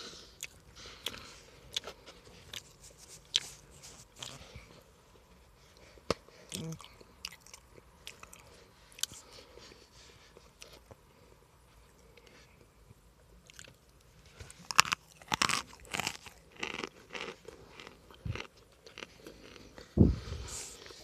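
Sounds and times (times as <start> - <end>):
loud crunchy chewing: 0.4 - 4.7, 14.4 - 21.0.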